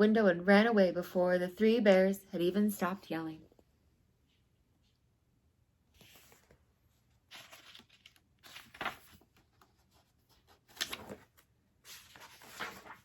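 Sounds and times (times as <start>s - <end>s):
paper pages rustling: 5.9s - 13.0s.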